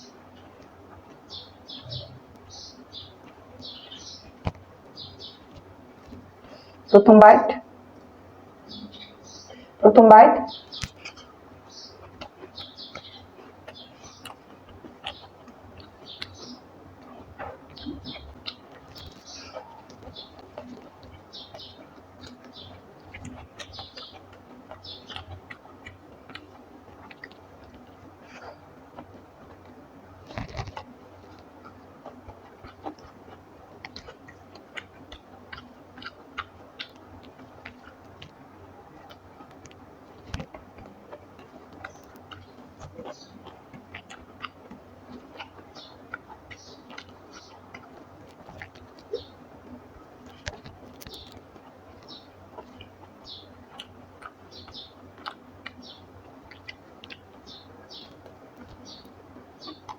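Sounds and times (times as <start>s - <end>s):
chewing: 0.0s - 6.9s, 10.5s - 59.9s
lip smacks: 10.7s - 11.4s, 12.0s - 59.9s
wet mouth clicks: 39.0s - 49.3s, 53.7s - 54.4s, 55.2s - 55.8s.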